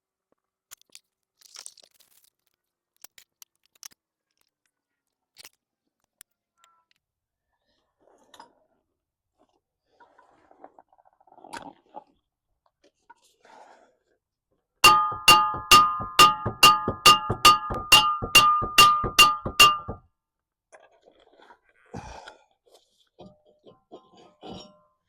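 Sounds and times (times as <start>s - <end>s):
hammer blows on metal: 14.8s - 20.0s.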